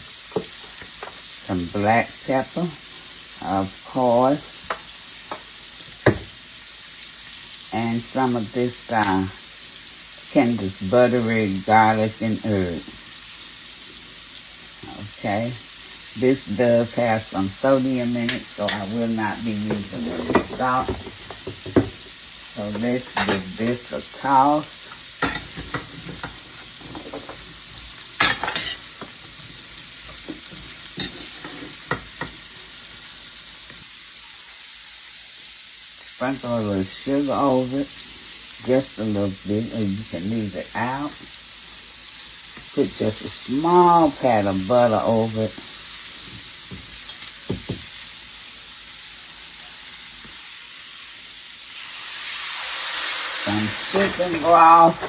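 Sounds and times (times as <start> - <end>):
steady sizzle: 0.0 - 55.0.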